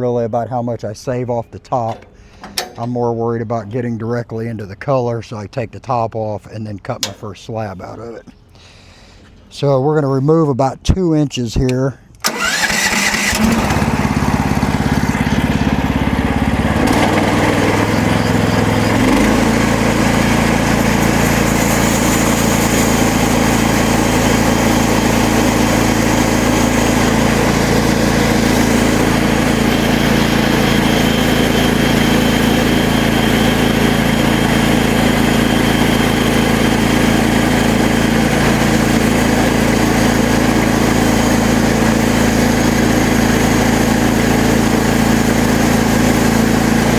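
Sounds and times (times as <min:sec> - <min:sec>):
small gasoline engine running: 0:12.3 - 0:46.9
band saw blade cutting log: 0:16.7 - 0:41.7.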